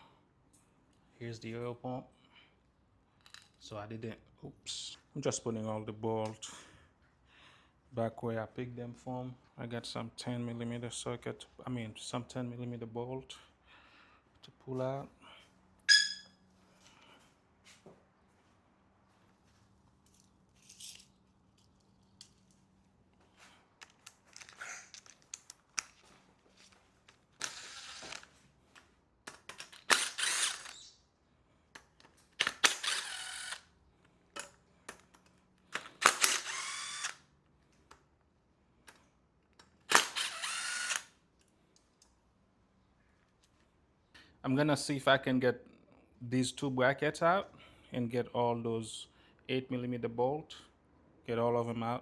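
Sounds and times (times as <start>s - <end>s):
tools and bolts clinking: 20.0s - 22.7s, 23.8s - 28.3s
cordless power tool whirring: 27.4s - 28.3s, 29.4s - 30.9s, 32.4s - 33.7s, 35.8s - 37.2s, 39.9s - 41.1s.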